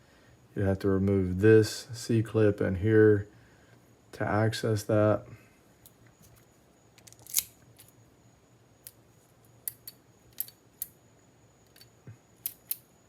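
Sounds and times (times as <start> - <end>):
metallic clicks of lock parts: 7.0 - 8.0, 9.6 - 11.0, 11.6 - 12.9.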